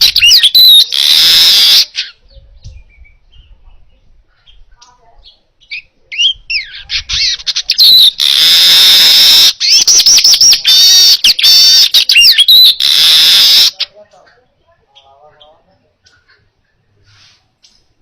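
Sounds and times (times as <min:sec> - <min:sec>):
weaver bird singing: 0:00.0 - 0:13.9.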